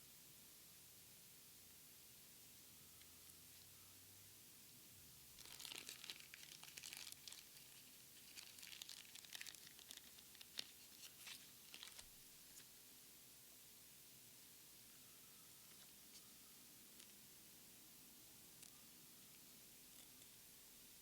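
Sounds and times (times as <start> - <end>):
foil wrapper crinkling and tearing: 5.4 - 12.7.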